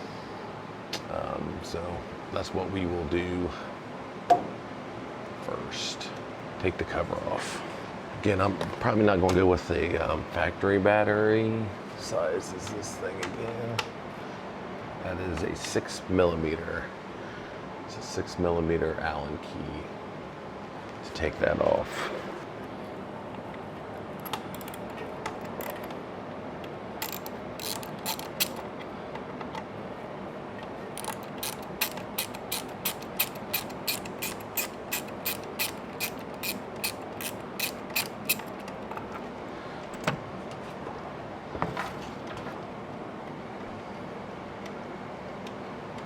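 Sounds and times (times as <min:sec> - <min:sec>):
hand ratchet clicking: 0:24.6 - 0:24.8, 0:25.5 - 0:25.8, 0:27.0 - 0:28.6, 0:31.0 - 0:38.7.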